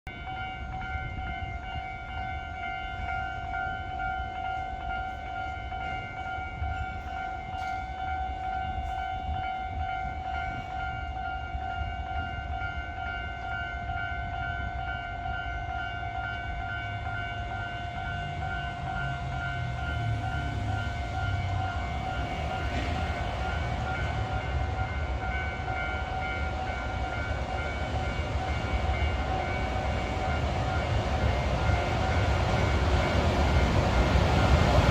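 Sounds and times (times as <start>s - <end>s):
low rumble of train: 0.0s - 34.9s
level-crossing warning bell ringing: 0.1s - 34.9s.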